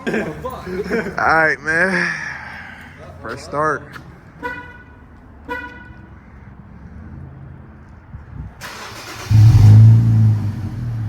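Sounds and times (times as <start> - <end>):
car engine starting and idling: 8.6 - 11.0.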